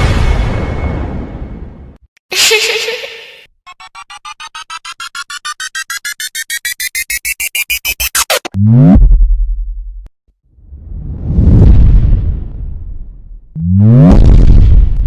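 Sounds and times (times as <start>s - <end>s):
electronic riser tones: 3.7s - 9.7s
deep bass drop: 4.8s - 10.1s, 10.7s - 15.0s.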